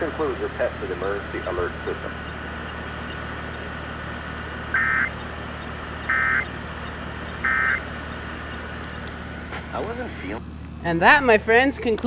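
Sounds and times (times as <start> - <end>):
raspy digital data bursts: 4.7 - 5.1, 6.1 - 6.5, 7.4 - 7.8.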